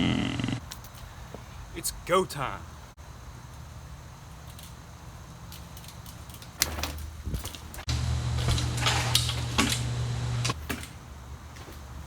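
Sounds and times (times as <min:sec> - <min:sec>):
tyre and wind rushing: 0:06.7 - 0:07.9.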